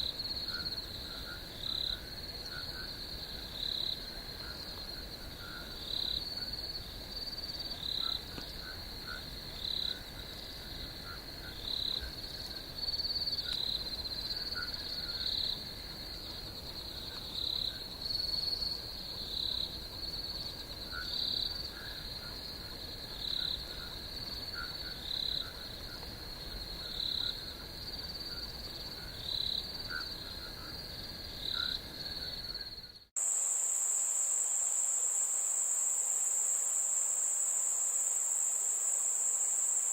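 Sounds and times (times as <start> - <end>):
crickets trilling: 0.0 - 39.9
higher insect trill: 31.4 - 39.9.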